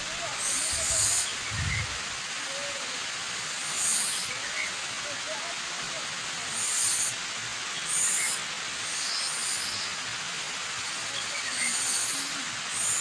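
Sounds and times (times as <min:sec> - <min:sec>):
waterfall rushing: 0:00.0 - 0:13.0
bird calling high-pitched: 0:00.4 - 0:01.8, 0:07.9 - 0:09.9, 0:11.4 - 0:13.0.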